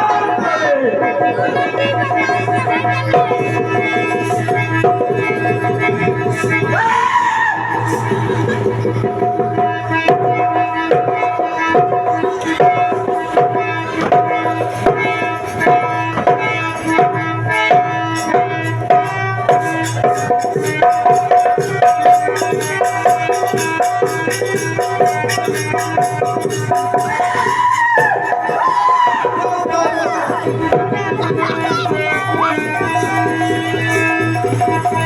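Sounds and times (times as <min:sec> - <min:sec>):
tabla drum strokes: 0:01.0 - 0:35.0
held melody notes: 0:07.7 - 0:35.0.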